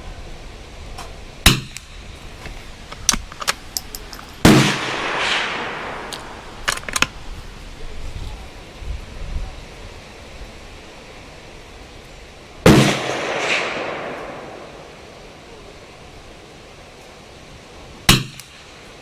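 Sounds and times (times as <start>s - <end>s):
metallic rifle bolt clicks: 2.4s - 7.2s
rifle shot with echo: 4.4s - 7.2s, 12.7s - 15.6s.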